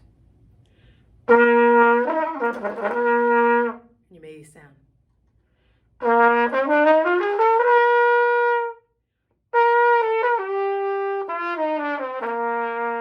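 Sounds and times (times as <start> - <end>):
trumpet playing scale: 1.2 - 3.9, 6.0 - 8.9, 9.5 - 13.0.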